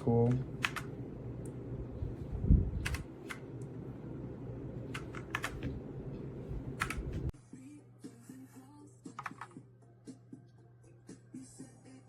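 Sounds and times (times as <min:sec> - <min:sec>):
keyboard key clicks: 0:00.2 - 0:00.9, 0:02.8 - 0:03.4, 0:04.9 - 0:05.8, 0:06.8 - 0:07.2.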